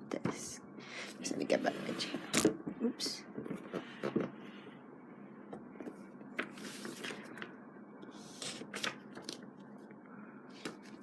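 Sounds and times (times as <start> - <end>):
paper rustling: 5.9 - 7.5, 8.2 - 9.6.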